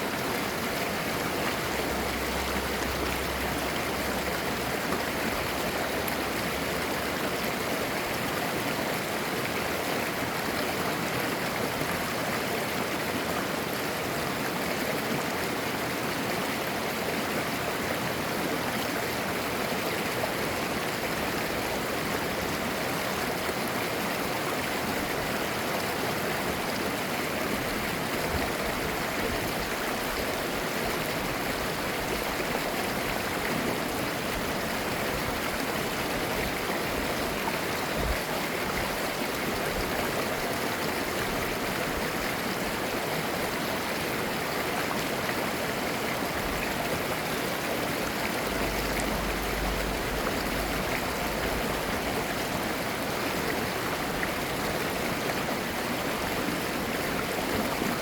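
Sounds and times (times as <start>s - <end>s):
stream babbling: 0.0s - 58.0s.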